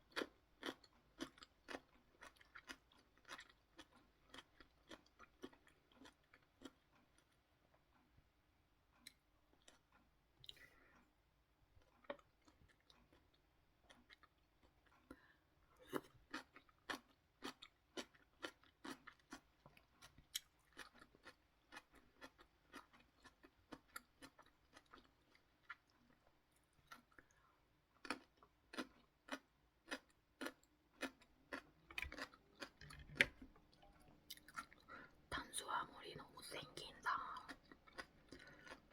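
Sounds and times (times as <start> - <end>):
wet chewing clicks: 28.0 - 35.9, 36.7 - 38.9.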